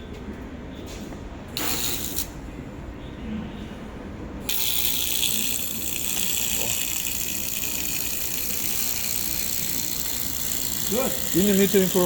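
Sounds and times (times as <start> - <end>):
laser welder hissing: 1.6 - 2.3, 4.5 - 12.0.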